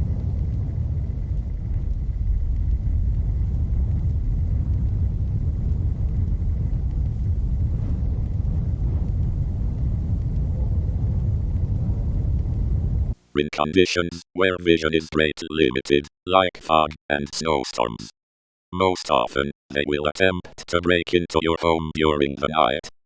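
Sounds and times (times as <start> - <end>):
low rumbling noise: 0.0 - 13.2.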